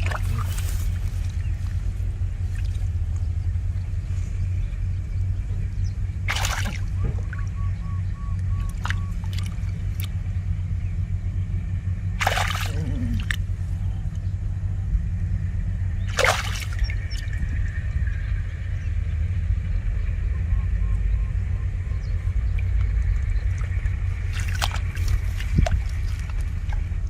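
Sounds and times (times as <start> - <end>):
water splashing: 0.0 - 1.1, 6.2 - 7.6, 8.6 - 10.1, 12.2 - 13.6, 16.1 - 17.4, 23.4 - 27.0
low rumble: 0.0 - 27.0.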